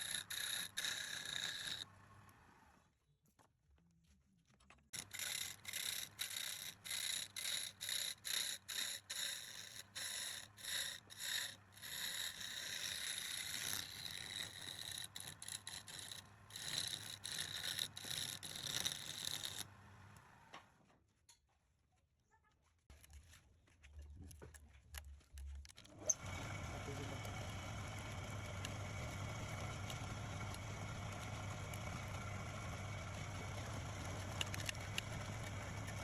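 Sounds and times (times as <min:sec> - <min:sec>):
tool scraping spinning wood: 0:00.0 - 0:02.3, 0:05.0 - 0:20.4, 0:26.0 - 0:36.0.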